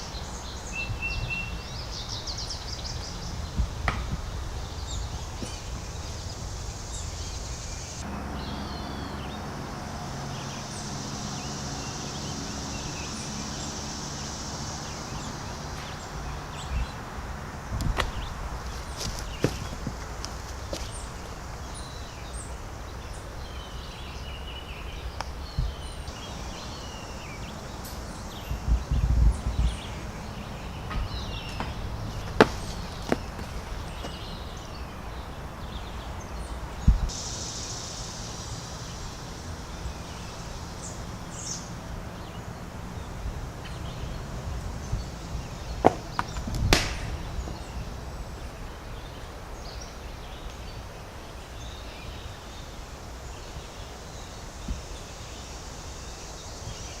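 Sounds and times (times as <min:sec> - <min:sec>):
wind rumble on microphone: 0:00.0 - 0:10.0, 0:14.7 - 0:22.0, 0:25.0 - 0:26.6, 0:27.2 - 0:37.2, 0:41.7 - 0:49.8
birds chirping: 0:00.0 - 0:57.0
sharp knocks: 0:30.9 - 0:34.2, 0:45.8 - 0:47.2.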